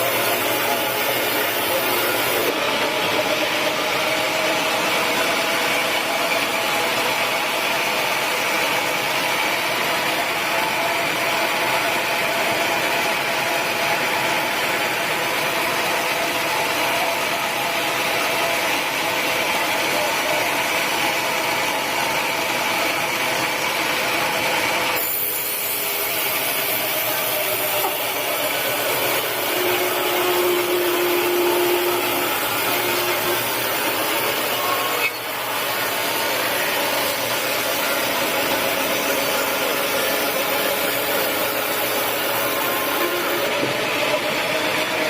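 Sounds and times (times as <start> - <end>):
saw rasping through wood: 25.3 - 43.5.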